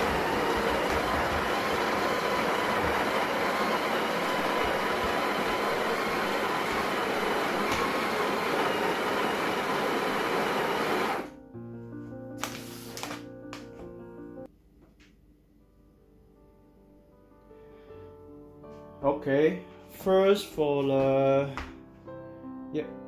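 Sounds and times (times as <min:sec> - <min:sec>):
electric coffee grinder grinding: 0:00.0 - 0:11.3.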